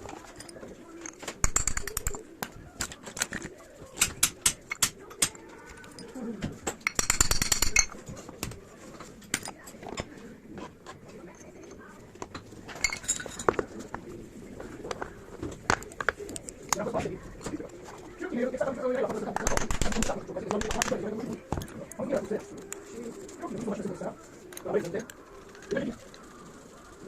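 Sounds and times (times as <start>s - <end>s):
metal tools clinking and rattling: 0.1s - 2.2s, 6.8s - 8.2s, 12.7s - 13.8s.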